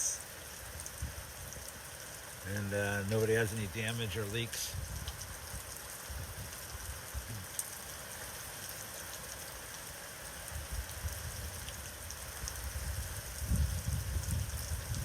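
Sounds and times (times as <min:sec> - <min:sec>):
heavy rain hissing: 0:00.0 - 0:15.0
wind gusts on microphone: 0:04.7 - 0:07.4, 0:12.4 - 0:15.0.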